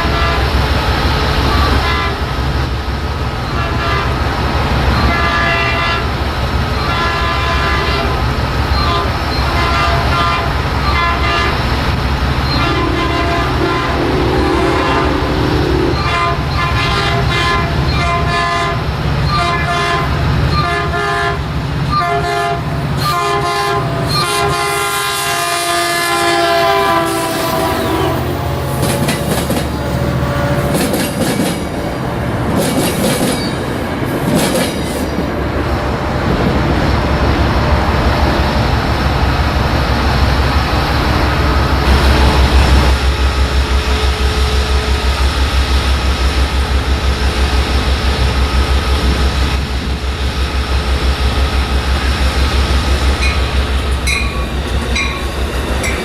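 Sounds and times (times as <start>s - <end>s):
locomotive horn blasts: 1.5s - 2.3s, 3.6s - 4.2s, 5.1s - 6.1s, 6.8s - 8.2s, 8.8s - 11.6s, 12.5s - 28.3s
locomotive engine rumble: 7.5s - 19.3s, 26.3s - 56.0s
train wheels clattering over rails: 28.6s - 35.4s.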